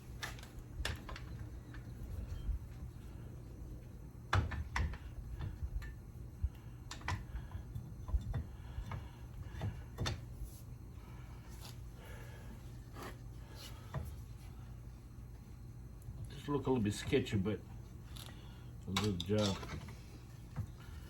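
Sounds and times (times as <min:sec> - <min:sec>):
steady low hum: 0:00.0 - 0:21.0
clicks and knocks of hand work: 0:06.9 - 0:10.3.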